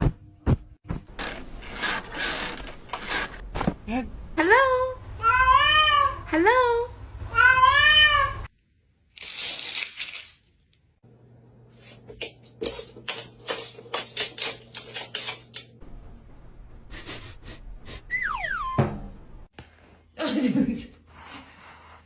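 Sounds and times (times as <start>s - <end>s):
cat meowing: 7.3s - 8.5s.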